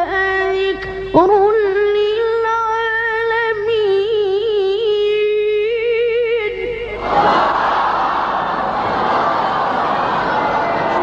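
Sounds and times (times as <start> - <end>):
crowd exclaiming loudly: 7.0 - 11.0.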